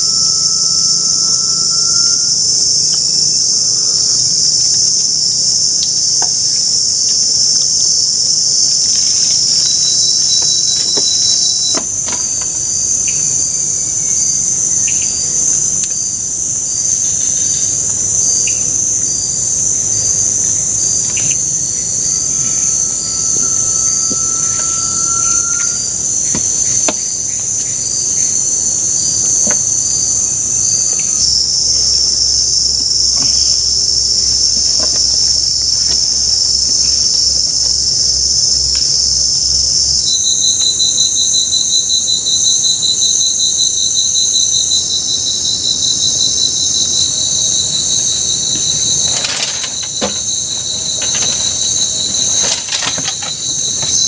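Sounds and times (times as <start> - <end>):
faint long whistle: 0.0 - 4.4, 21.8 - 26.9
insect chorus drone: 0.0 - 54.0
pulsing insect call: 0.0 - 54.0.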